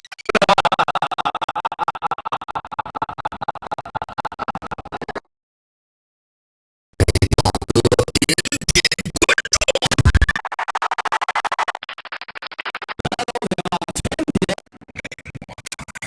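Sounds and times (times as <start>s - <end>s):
bass-heavy stuttering music clip: 7.0s - 16.0s.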